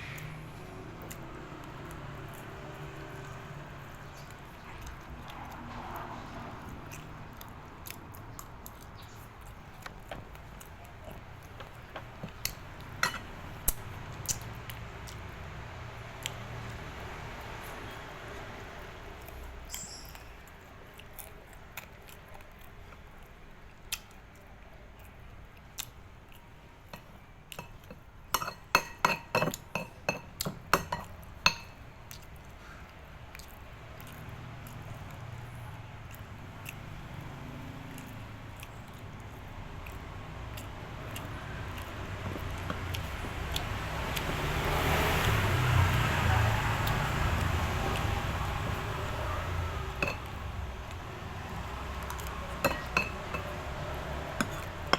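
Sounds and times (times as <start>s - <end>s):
faint background noise: 0.0s - 54.9s
utensils clinking against a dish: 11.6s - 13.8s, 26.9s - 31.8s, 50.0s - 50.4s, 52.2s - 53.6s, 54.4s - 54.9s.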